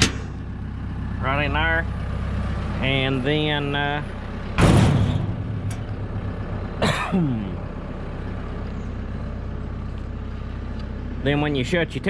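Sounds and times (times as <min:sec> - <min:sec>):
loud metallic clank: 0:00.0 - 0:00.4, 0:04.6 - 0:06.2
tractor engine idling: 0:00.0 - 0:12.0.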